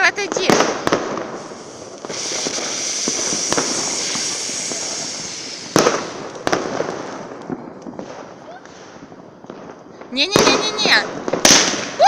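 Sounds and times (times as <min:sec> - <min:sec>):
firework hissing and crackling: 0:00.0 - 0:09.2, 0:10.1 - 0:12.0
firework bangs: 0:00.0 - 0:12.0.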